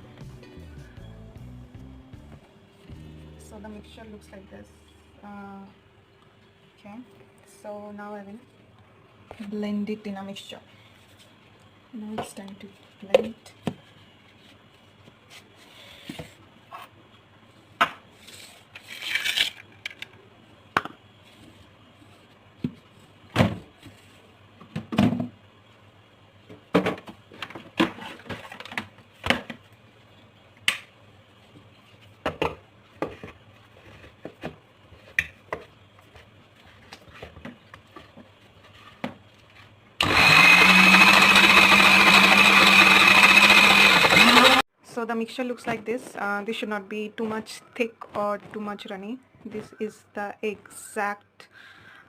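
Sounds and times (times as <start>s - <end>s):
electric blender running: 40.0s - 44.6s.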